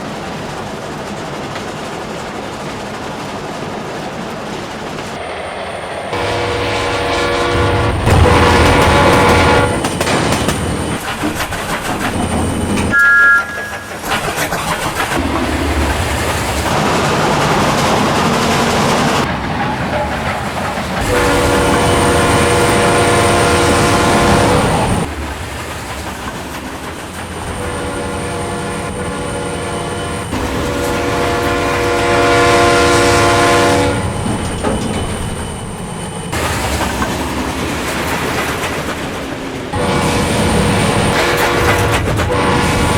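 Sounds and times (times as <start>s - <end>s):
locomotive running noise: 0.0s - 42.9s
train horn blasts: 6.0s - 11.0s, 12.8s - 14.2s, 21.0s - 25.2s, 27.5s - 35.2s, 39.7s - 42.9s.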